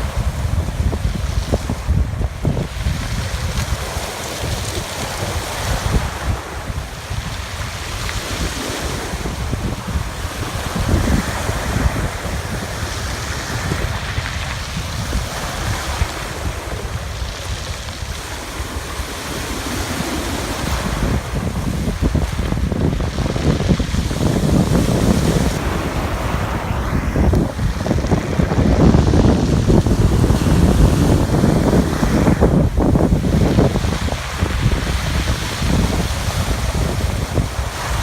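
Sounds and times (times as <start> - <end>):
waves washing onto shore: 0.0 - 38.0
wind buffeting microphone: 0.0 - 38.0.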